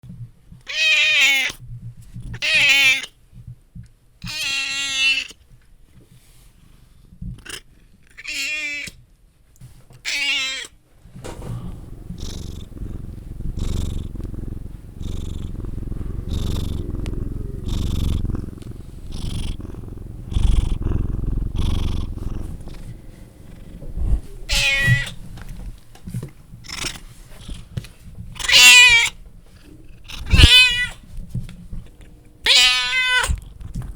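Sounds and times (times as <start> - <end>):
cat purring: 11.2 - 33.9
cat meowing: 11.3 - 22.9, 24.5 - 25.2, 28.4 - 29.1, 30.2 - 31.0, 32.4 - 33.4.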